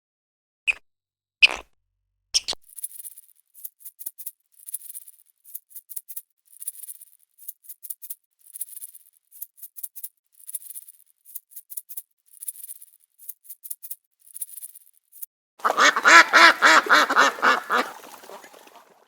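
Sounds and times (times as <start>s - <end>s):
shaker rhythm: 2.4s - 15.3s.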